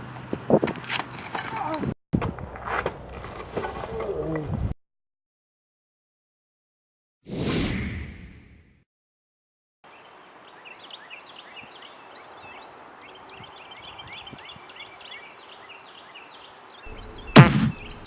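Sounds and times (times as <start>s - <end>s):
small birds chirping: 9.9s - 18.0s
loud thump: 17.3s - 17.9s.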